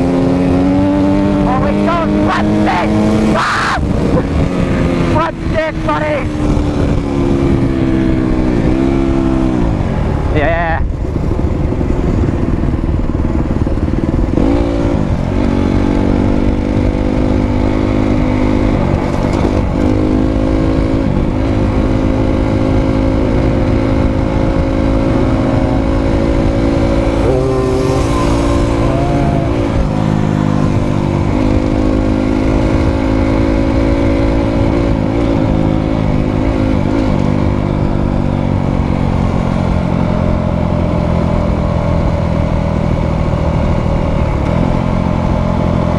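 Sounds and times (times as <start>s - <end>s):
dirt bike engine running hard: 0.0s - 45.9s.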